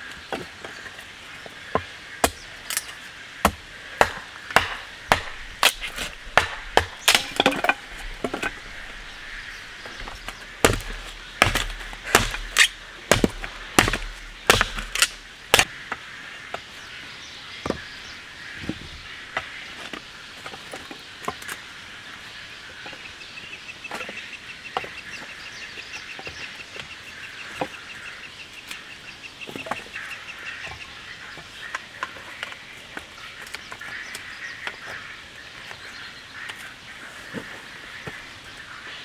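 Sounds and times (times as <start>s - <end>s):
sharp knocks: 2.2s - 15.7s.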